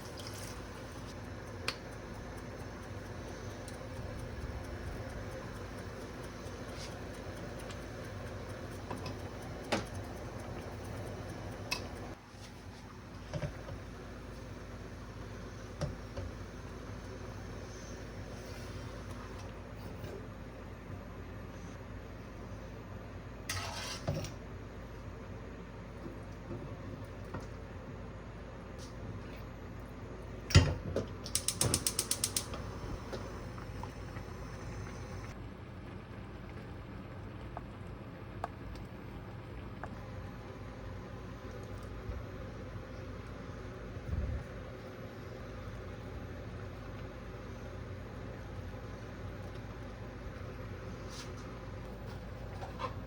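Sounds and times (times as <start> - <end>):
steady hum: 0.0 - 20.8, 31.3 - 35.4
sharp clicks and taps: 31.3 - 33.2.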